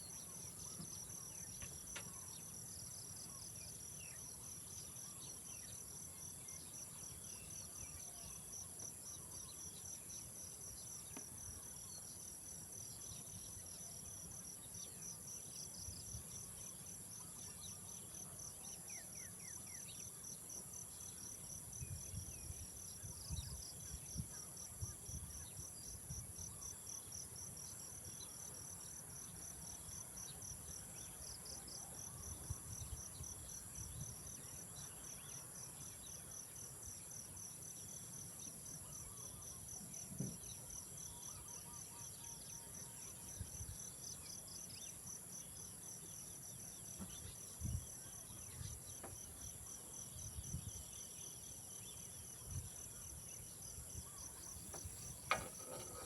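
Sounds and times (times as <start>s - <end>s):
insects chirping: 19.2s - 56.0s.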